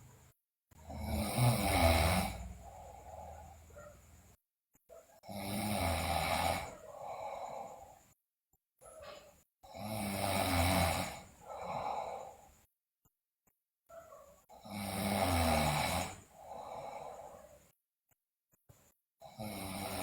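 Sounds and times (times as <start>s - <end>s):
girl snoring loudly: 0.8s - 3.7s, 5.2s - 8.0s, 9.6s - 12.5s, 14.6s - 17.5s, 19.2s - 20.0s.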